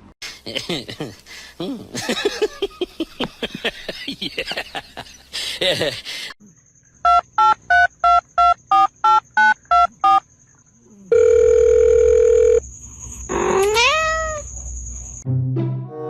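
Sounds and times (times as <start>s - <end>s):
steady phone tone: 11.1s - 12.6s.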